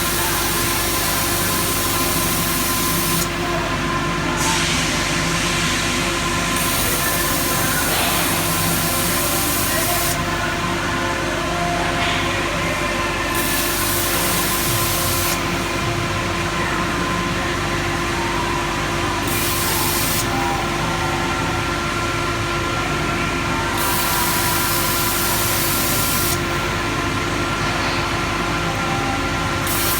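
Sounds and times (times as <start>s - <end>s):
marking machine humming: 0.0s - 29.9s
hiss: 4.4s - 10.2s.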